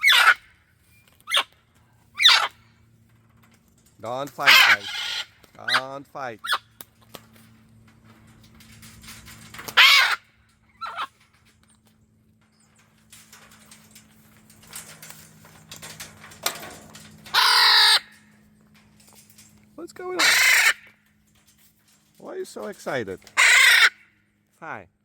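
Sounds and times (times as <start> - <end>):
macaws squawking: 0.0 - 0.5, 1.3 - 1.5, 2.2 - 2.7, 4.4 - 6.7, 9.6 - 10.2, 10.8 - 11.1, 17.3 - 18.2, 20.0 - 21.0, 22.6 - 24.2.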